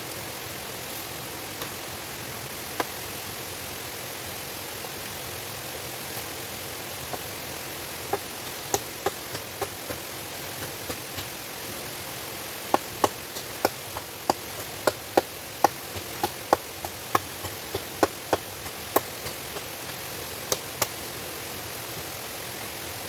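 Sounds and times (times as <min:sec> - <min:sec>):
waterfall rushing: 0:01.3 - 0:23.0
sharp knocks or taps: 0:08.1 - 0:11.4, 0:12.7 - 0:21.0.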